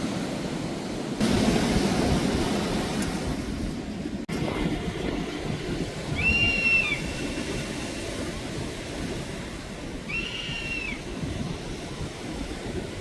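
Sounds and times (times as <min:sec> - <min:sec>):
sea waves rumbling: 0:00.0 - 0:13.0
wind on microphone: 0:00.0 - 0:13.0
high whistle-like tones: 0:06.2 - 0:07.6, 0:10.1 - 0:11.0.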